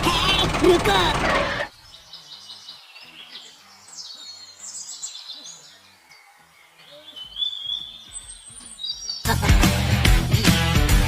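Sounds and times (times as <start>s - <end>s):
birds chirping: 0.0s - 11.0s.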